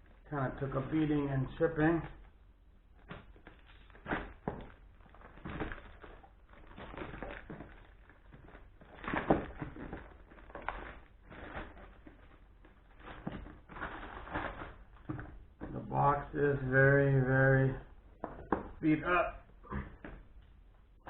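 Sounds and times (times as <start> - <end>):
packaging rustling and crinkling: 0.0 - 16.3.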